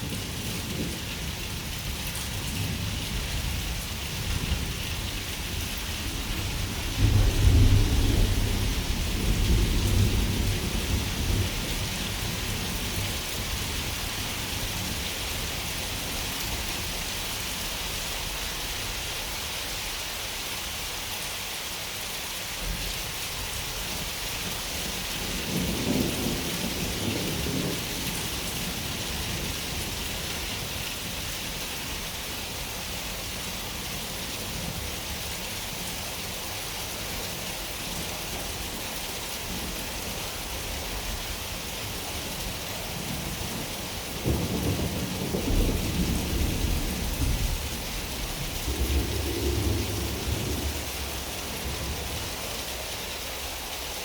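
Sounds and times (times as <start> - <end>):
rain hissing: 0.0 - 54.0
thunder rumbling: 2.7 - 14.0, 43.0 - 52.5.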